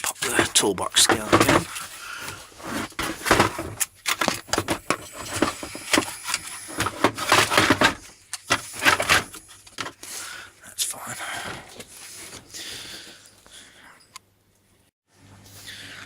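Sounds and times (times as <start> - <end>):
tools clattering in a toolbox: 0.0 - 10.1.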